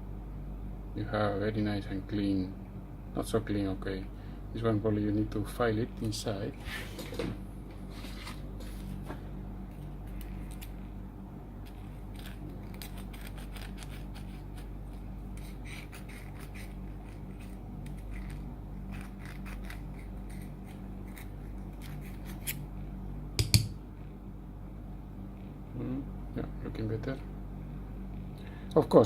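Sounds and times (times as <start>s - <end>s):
file scraping metal contact: 15.4s - 22.6s.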